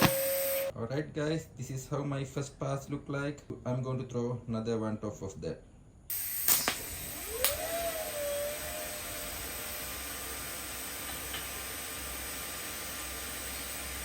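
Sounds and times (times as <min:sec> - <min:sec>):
welding arc hissing: 0:00.0 - 0:00.7, 0:06.1 - 0:14.0
sharp clicks: 0:06.4 - 0:07.6.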